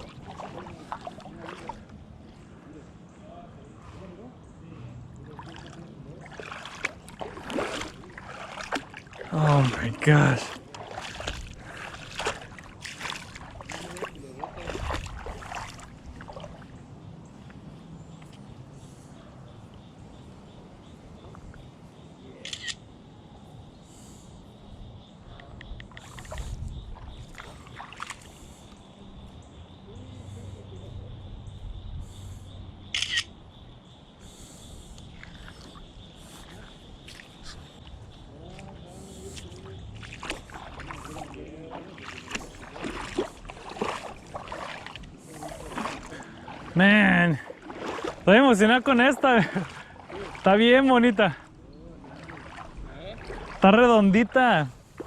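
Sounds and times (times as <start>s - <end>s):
creek water sloshing and splashing: 0.0s - 3.1s, 5.0s - 22.7s, 24.9s - 30.8s, 34.2s - 55.0s.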